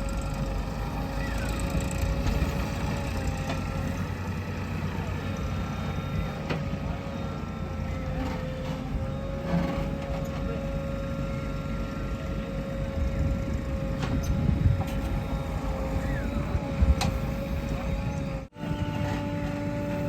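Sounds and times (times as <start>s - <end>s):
diesel engine rumble: 0.0s - 20.0s
steady whine: 0.0s - 20.0s.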